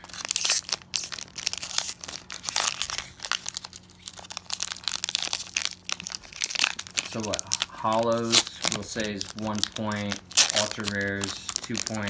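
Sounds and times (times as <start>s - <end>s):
foil wrapper crinkling: 0.0s - 12.0s
cards being handled: 5.2s - 12.0s.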